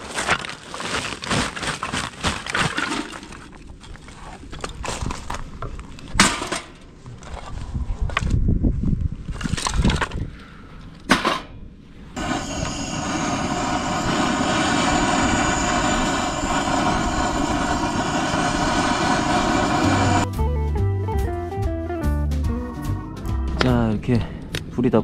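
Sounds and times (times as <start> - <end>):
fire roaring: 12.2 - 20.3.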